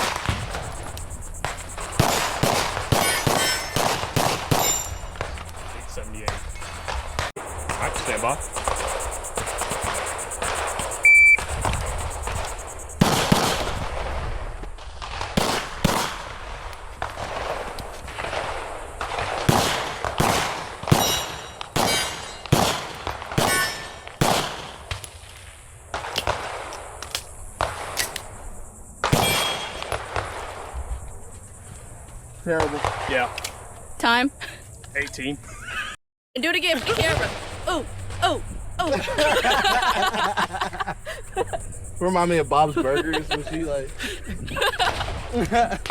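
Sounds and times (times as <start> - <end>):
pistol shots: 1.4 - 5.0, 13.0 - 14.0, 15.0 - 16.4, 19.0 - 25.0, 29.0 - 30.4
metallic ring of steel targets: 3.0 - 3.8, 4.6 - 5.1, 23.5 - 24.0
shot timer beep: 11.0 - 11.5.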